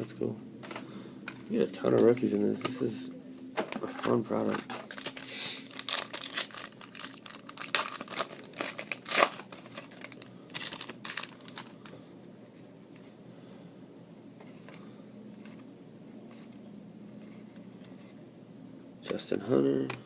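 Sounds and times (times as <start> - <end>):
foil wrapper crinkling and tearing: 4.4 - 11.8.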